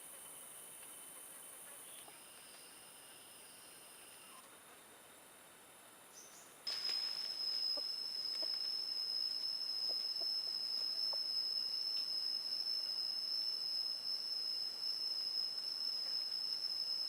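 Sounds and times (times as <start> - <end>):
high-pitched insect drone: 6.7 - 17.0
faint ticks: 11.9 - 12.1.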